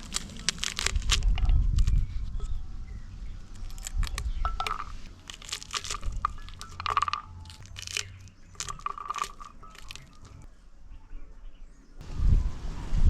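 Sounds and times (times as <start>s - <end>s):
fruit cracking and tearing: 0.0s - 2.6s, 3.3s - 10.5s.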